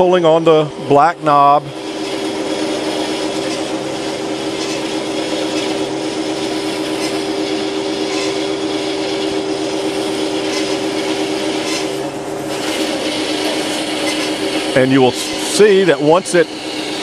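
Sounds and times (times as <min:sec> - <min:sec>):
band saw motor hum: 0:00.0 - 0:17.0
saw blade cutting metal: 0:00.0 - 0:17.0.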